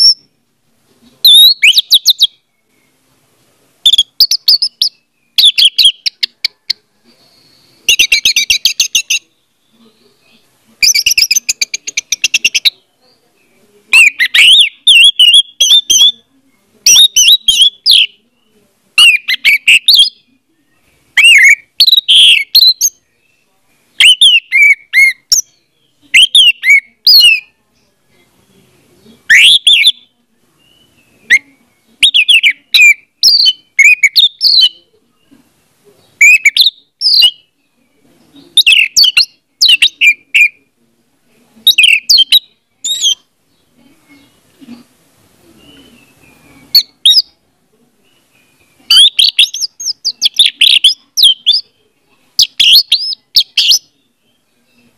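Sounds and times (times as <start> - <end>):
thrush singing whistled notes: 1.2 - 3.0, 3.8 - 9.8, 19.0 - 27.5, 45.6 - 47.4, 48.1 - 51.6.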